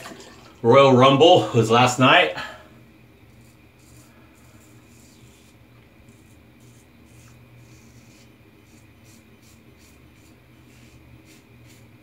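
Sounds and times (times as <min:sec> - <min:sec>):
steady low hum: 0:00.0 - 0:12.0
razor rasping during wet shave: 0:03.2 - 0:12.0.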